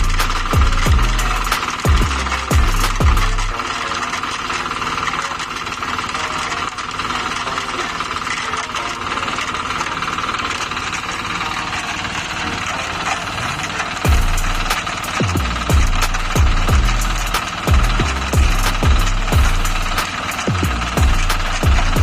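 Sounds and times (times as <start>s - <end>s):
music with heavy bass beats: 0.0s - 5.0s, 12.6s - 22.0s
machine engine whining: 0.0s - 22.0s.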